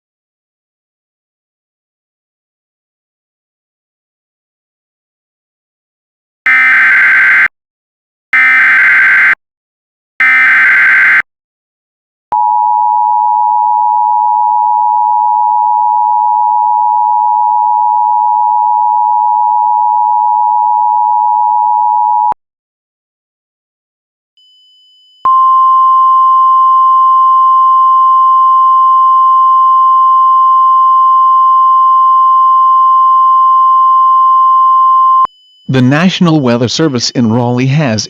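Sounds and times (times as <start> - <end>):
steady attention-signal tone: 6.5 - 7.5, 8.4 - 9.4, 10.2 - 11.2, 24.4 - 38.0.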